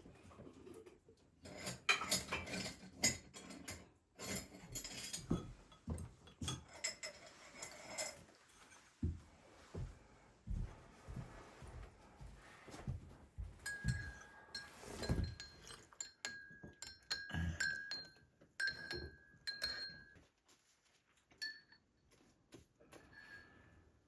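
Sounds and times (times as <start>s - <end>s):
utensils clinking on dishes: 1.4s - 8.8s, 13.6s - 20.2s.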